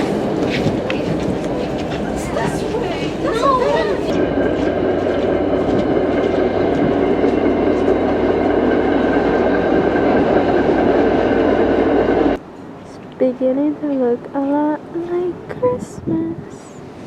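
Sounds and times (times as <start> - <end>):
train rumbling on rails: 0.0 - 12.9.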